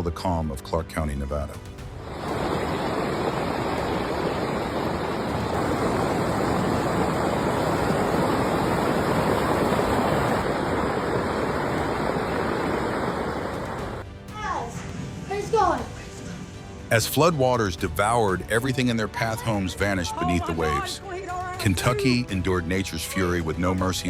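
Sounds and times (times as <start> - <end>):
floodwater rushing: 1.8 - 14.1.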